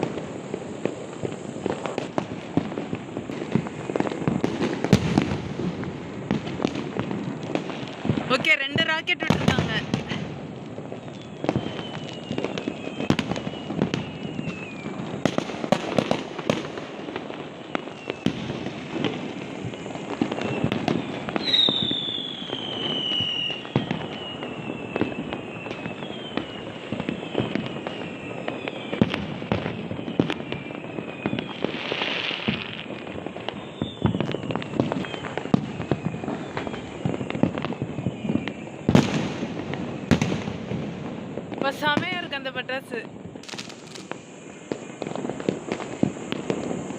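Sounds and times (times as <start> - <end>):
falling firework whistles: 0.0 - 46.9
firecrackers banging and popping: 0.0 - 46.9.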